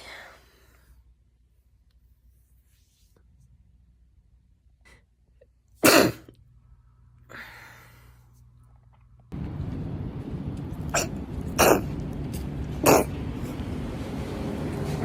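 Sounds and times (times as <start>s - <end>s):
woman sneezing: 5.8s - 6.3s
soft breath: 6.6s - 9.0s
steady background noise: 8.7s - 15.0s.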